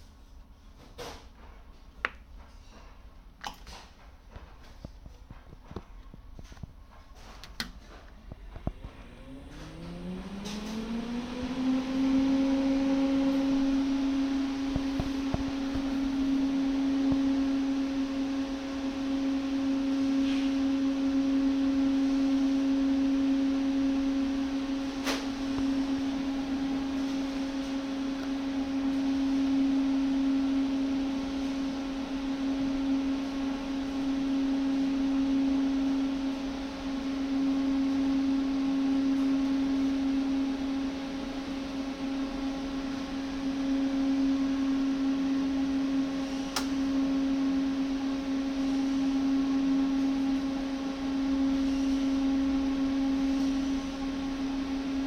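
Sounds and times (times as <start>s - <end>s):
welding machine humming: 11.6s - 18.2s.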